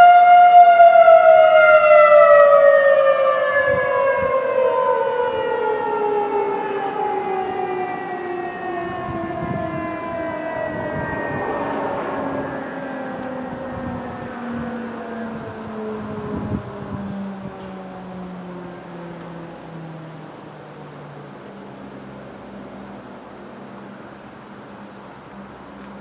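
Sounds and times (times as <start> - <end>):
warning siren winding down: 0.0 - 20.3.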